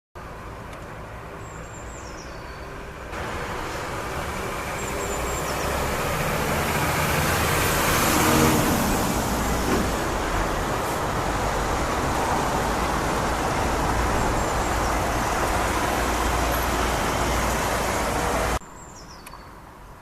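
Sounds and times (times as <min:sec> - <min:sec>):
traffic rumble: 0:00.2 - 0:20.0
vehicle passing by: 0:03.1 - 0:18.6.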